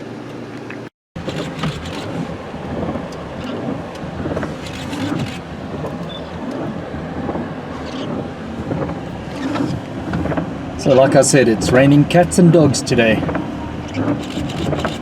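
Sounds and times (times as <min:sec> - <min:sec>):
heavy rain on a vehicle: 0:01.2 - 0:15.0
vehicle engine running: 0:01.2 - 0:15.0.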